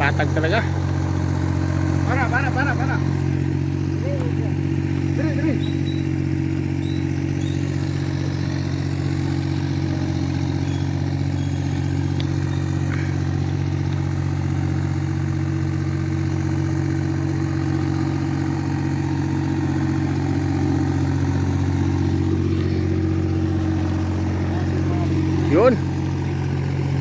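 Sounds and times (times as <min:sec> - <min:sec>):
backhoe engine running: 0:00.0 - 0:27.0.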